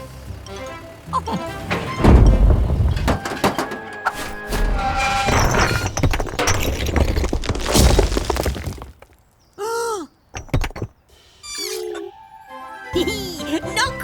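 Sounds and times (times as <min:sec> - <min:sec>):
cartoon crash clattering: 0:01.4 - 0:08.3.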